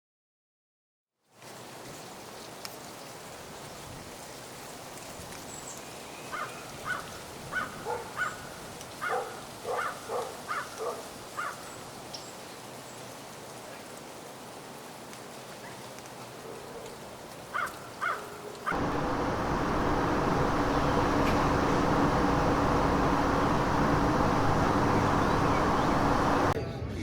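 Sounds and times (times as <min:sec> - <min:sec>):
steady outdoor hiss: 0:18.7 - 0:26.6.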